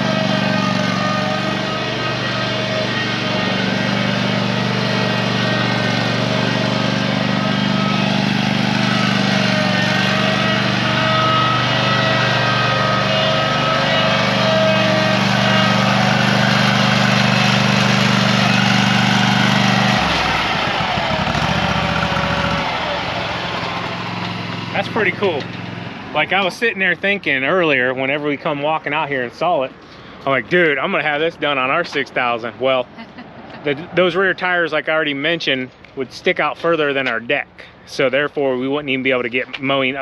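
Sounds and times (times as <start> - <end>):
ride-on lawn mower running: 0.0 - 27.8.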